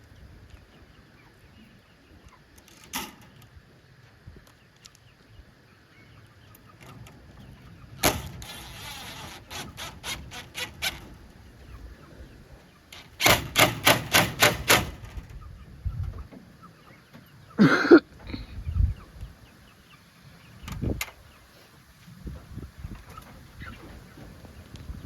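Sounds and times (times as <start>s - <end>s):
rapid sharp knocks: 13.2s - 15.1s
chicken calling: 15.3s - 20.7s.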